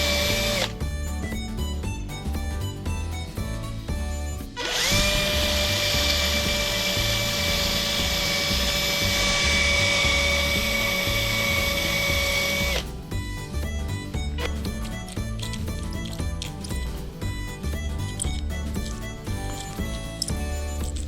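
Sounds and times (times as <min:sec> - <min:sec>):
small electric power tool spinning: 0:00.0 - 0:00.8, 0:04.6 - 0:12.9
background music with a beat: 0:00.0 - 0:21.0.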